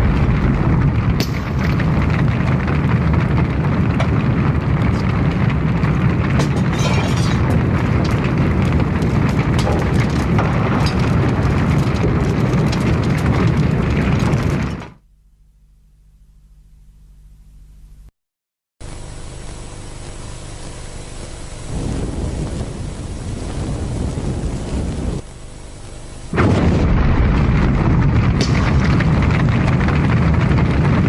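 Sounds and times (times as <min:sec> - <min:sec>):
fire crackling and popping: 0:00.0 - 0:15.0, 0:18.9 - 0:31.0
house fire roaring: 0:00.0 - 0:15.0, 0:18.9 - 0:31.0.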